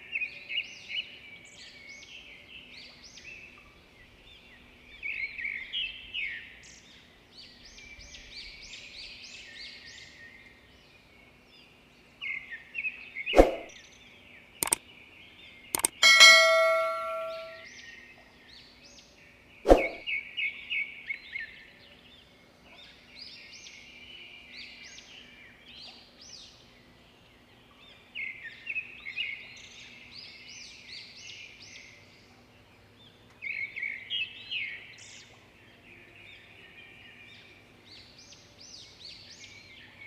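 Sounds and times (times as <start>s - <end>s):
birds chirping: 15.8s - 17.6s
sharp click: 15.8s - 17.6s.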